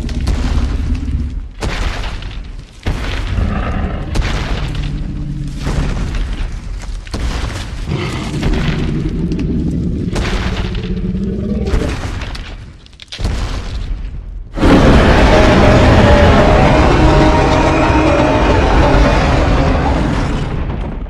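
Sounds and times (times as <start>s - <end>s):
giant monster roar: 3.3s - 6.1s, 7.9s - 12.0s, 14.6s - 20.8s.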